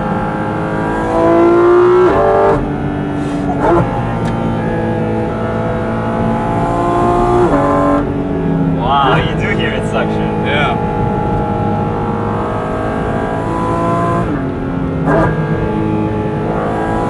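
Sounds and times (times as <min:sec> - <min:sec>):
car engine accelerating through gears: 0:00.0 - 0:17.0
engine intake suction: 0:03.0 - 0:04.5.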